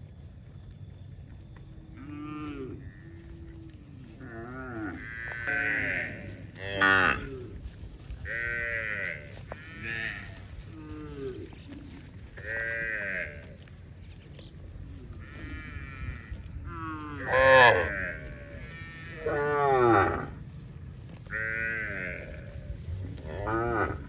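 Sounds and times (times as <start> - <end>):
farm animals bleating: 1.2 - 24.0.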